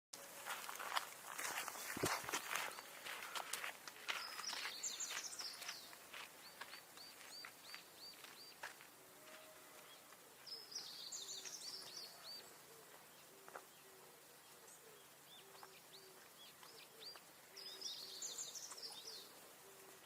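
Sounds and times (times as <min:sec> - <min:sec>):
bird chirps: 0:04.1 - 0:20.0
bird warbling song: 0:04.1 - 0:20.0.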